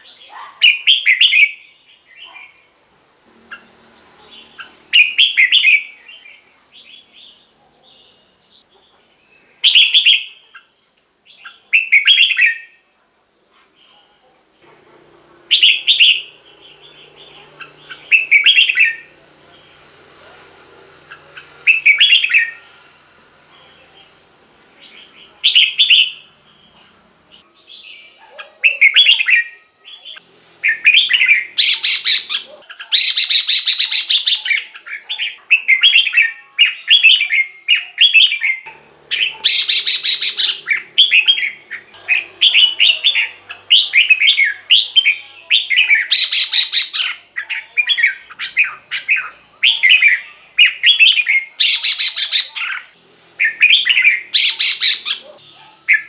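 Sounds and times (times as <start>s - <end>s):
bird singing warbled phrases: 0.0s - 12.9s, 15.4s - 56.0s.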